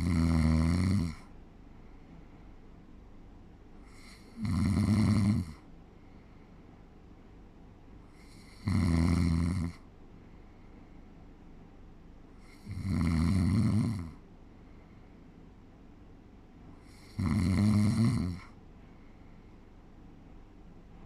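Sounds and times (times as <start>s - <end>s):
person snoring: 0.0s - 1.2s, 3.9s - 5.6s, 8.2s - 9.8s, 12.4s - 14.2s, 16.8s - 18.5s.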